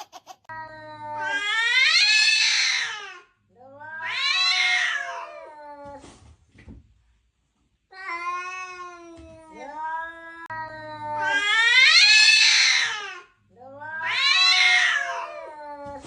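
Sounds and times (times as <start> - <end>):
cat yowling: 11.2 - 16.0.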